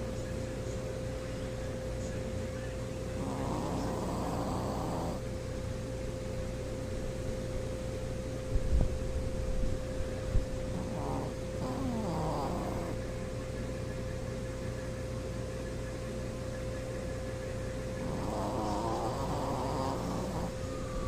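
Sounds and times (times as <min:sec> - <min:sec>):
dog snoring: 0:03.0 - 0:05.2, 0:10.5 - 0:13.2, 0:17.4 - 0:21.0.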